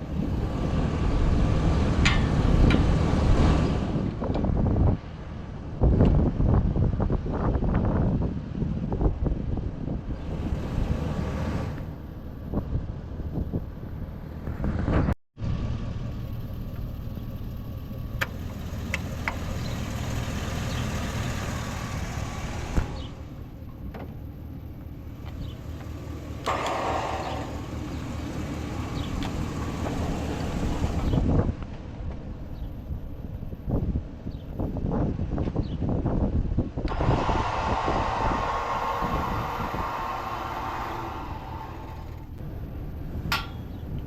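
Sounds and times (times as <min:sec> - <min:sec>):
vehicle engine idling: 0:15.4 - 0:34.8, 0:37.0 - 0:44.0.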